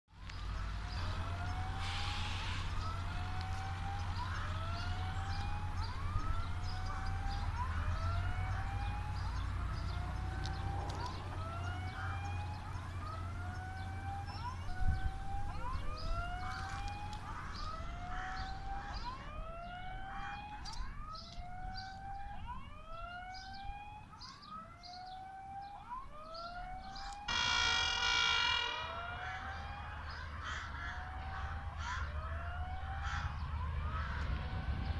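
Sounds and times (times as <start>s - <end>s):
whooping siren tone: 0.1s - 34.9s
horn blast: 27.3s - 29.4s.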